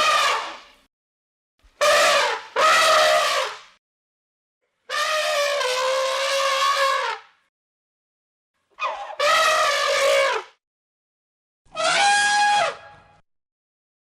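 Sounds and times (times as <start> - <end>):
elephant trumpeting: 1.8 - 3.6, 4.9 - 7.2, 8.8 - 10.5, 11.7 - 13.0.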